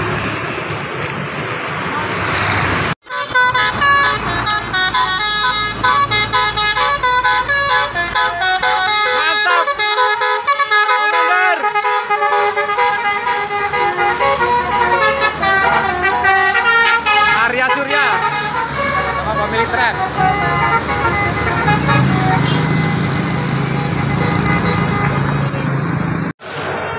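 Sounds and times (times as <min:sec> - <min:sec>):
bus horn playing melody: 0:03.0 - 0:25.3.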